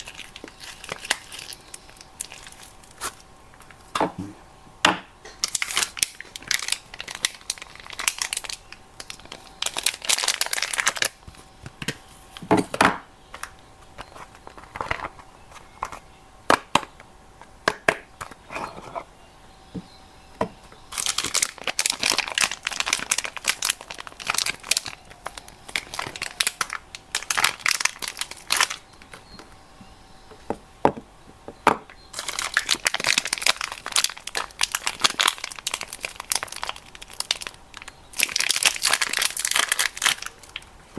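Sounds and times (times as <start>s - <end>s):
wrappers crinkling and tearing: 0.0s - 3.9s, 5.4s - 11.4s, 20.9s - 29.4s, 32.1s - 40.9s.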